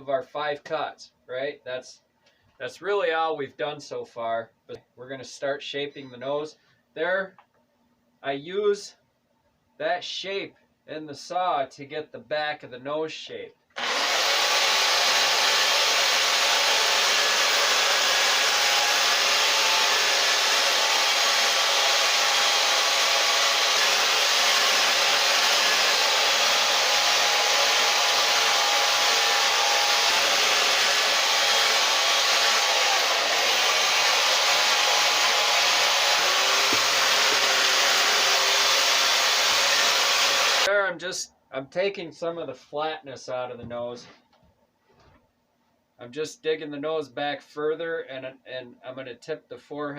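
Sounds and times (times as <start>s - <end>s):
chainsaw cutting wood: 13.8s - 40.7s.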